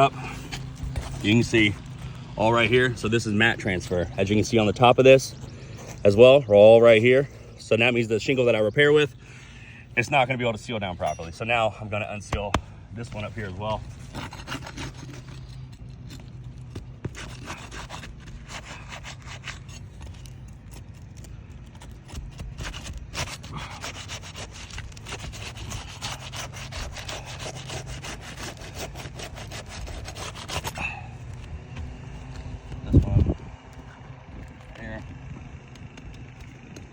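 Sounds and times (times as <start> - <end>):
roofing shingle scraping: 0.0 - 7.0, 12.2 - 33.0.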